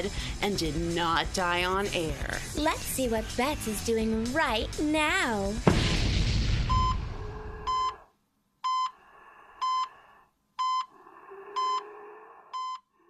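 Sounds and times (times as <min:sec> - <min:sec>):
heart monitor beeping: 0:06.7 - 0:07.0, 0:07.7 - 0:08.0, 0:08.6 - 0:09.0, 0:09.6 - 0:10.0, 0:10.6 - 0:12.9.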